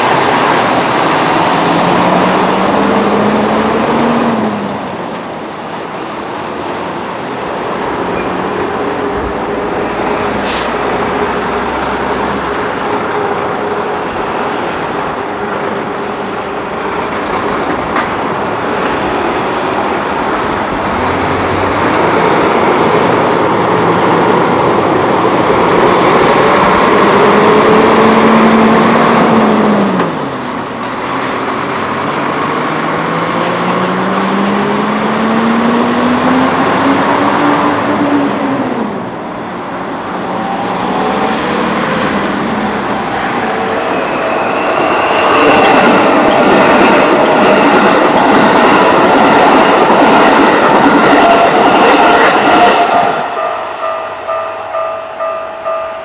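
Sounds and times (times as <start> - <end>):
diesel truck engine revving: 0.8 - 4.8, 19.4 - 29.8, 31.0 - 38.6
faint high beeping: 8.0 - 12.5.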